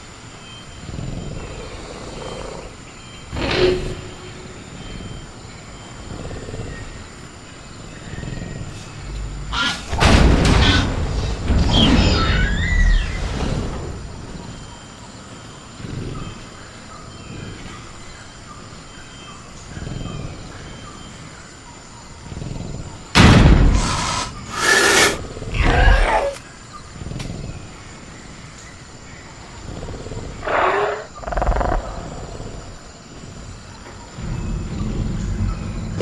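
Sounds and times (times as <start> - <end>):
crickets chirring: 0.0 - 36.0
dinosaur roaring snarls: 0.8 - 4.2, 22.2 - 26.4, 29.5 - 32.9.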